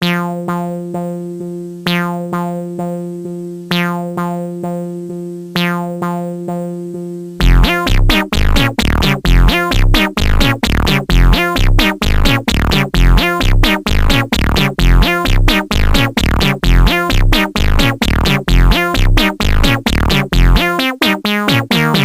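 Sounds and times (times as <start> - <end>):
repeating synthesizer notes: 0.0 - 22.0
held bass tone: 5.6 - 22.0
heavy bass beat: 7.2 - 22.0
falling synth sounds: 7.4 - 22.0.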